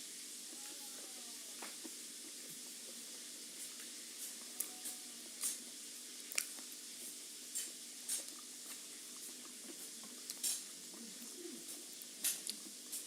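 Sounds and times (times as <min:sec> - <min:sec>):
faint hiss: 0:00.0 - 0:13.0
wet chewing smacks: 0:06.3 - 0:06.7.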